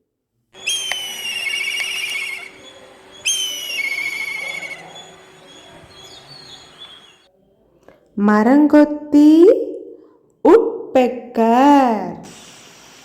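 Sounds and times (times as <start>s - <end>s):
kite calling with whistled trill: 0.6s - 7.3s.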